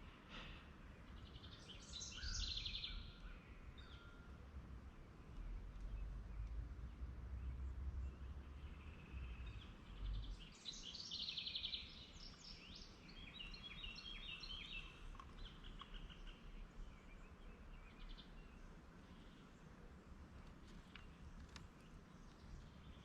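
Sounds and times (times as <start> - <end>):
small bird singing: 0.9 - 23.0
faint low rumble: 2.4 - 10.6.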